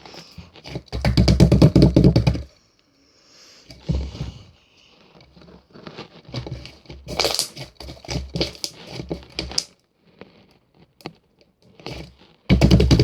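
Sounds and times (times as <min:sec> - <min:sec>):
candy wrappers crinkling: 0:05.4 - 0:09.8.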